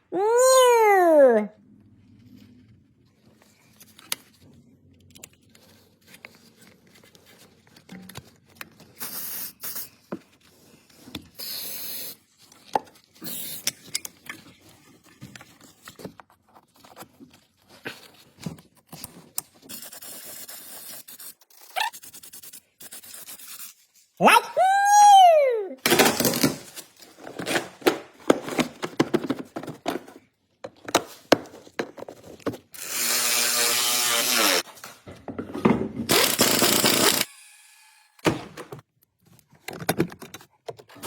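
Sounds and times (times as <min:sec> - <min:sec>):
aerosol spray can hissing: 0:09.0 - 0:10.0.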